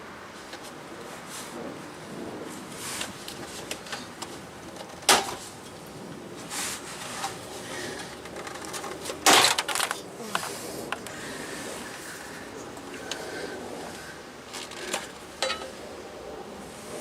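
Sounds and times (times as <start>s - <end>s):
tools and parts clicking and knocking: 8.0s - 10.0s, 14.6s - 15.8s.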